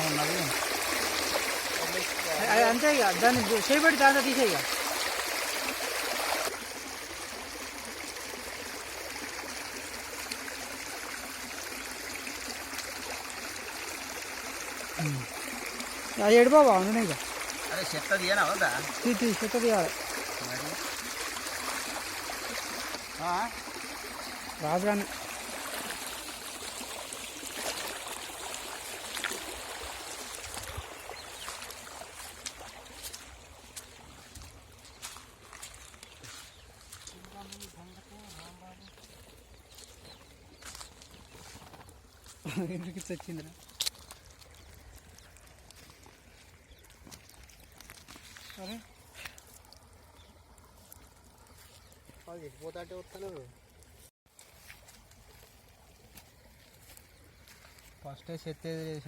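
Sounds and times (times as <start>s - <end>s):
river water rushing: 0.0s - 34.5s.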